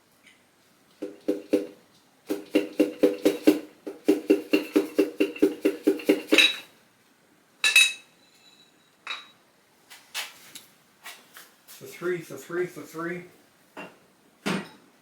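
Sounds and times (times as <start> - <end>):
metal clink: 7.6 - 9.4.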